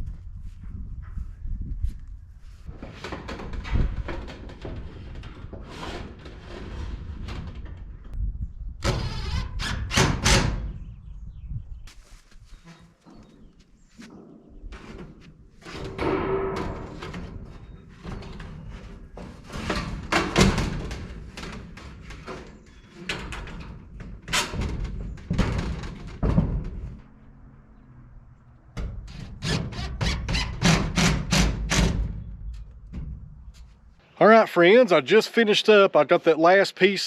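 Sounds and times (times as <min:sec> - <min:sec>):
metal squeaks: 0:12.5 - 0:13.4, 0:15.6 - 0:20.0, 0:29.1 - 0:31.4
metal panels knocking: 0:14.6 - 0:27.0, 0:28.7 - 0:33.9.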